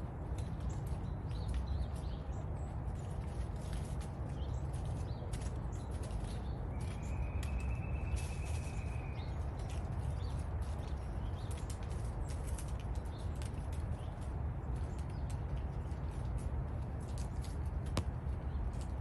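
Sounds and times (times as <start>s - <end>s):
falling leaves ticking: 0.0s - 19.0s.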